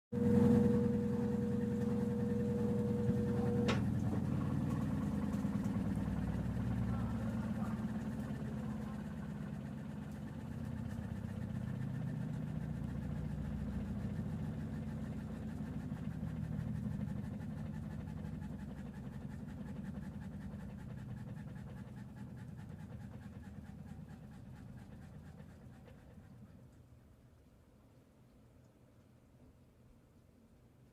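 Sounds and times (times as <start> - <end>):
washing machine rattling: 0.1 - 22.4.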